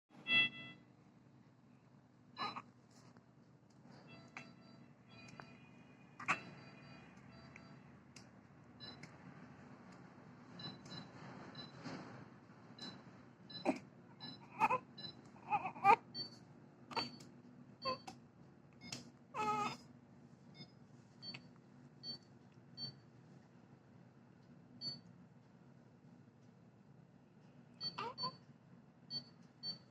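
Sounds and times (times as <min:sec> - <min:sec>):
baby crying: 0:02.4 - 0:02.7, 0:14.4 - 0:16.0, 0:19.4 - 0:19.8, 0:28.0 - 0:28.3
baby whimpering and grunting: 0:14.4 - 0:16.1, 0:19.4 - 0:19.8.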